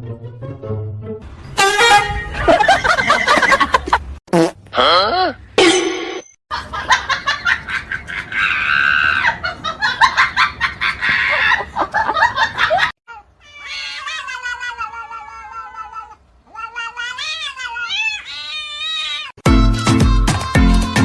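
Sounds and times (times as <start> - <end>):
cat yowling: 13.1 - 19.4.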